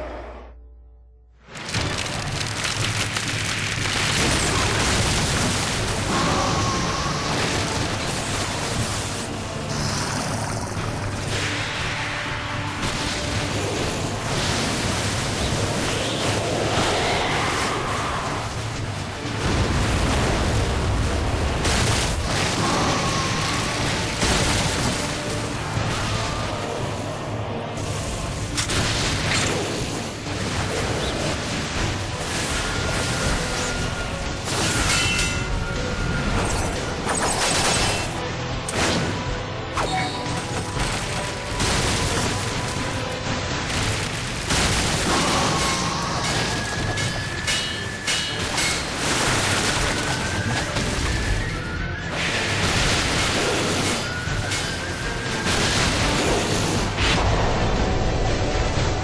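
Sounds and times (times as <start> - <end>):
background music: 0.0 - 59.0.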